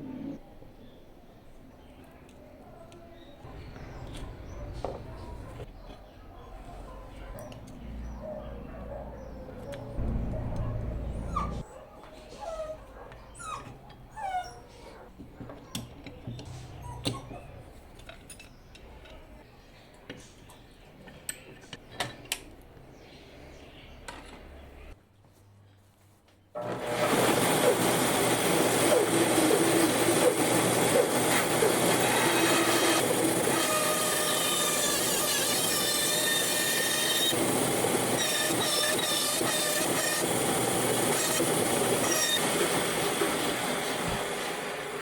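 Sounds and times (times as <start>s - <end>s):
low steady hum: 9.9s - 11.6s
dog whimpering: 11.1s - 11.6s, 12.4s - 15.0s, 16.6s - 17.6s.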